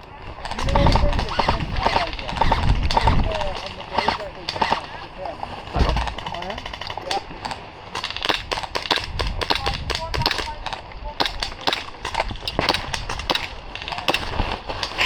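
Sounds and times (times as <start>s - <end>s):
faint distant voices: 0.0s - 8.5s
airsoft guns firing: 0.3s - 15.0s.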